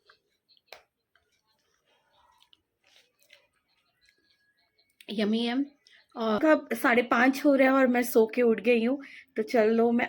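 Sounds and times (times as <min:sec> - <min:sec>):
soft chewing: 0:00.0 - 0:06.2.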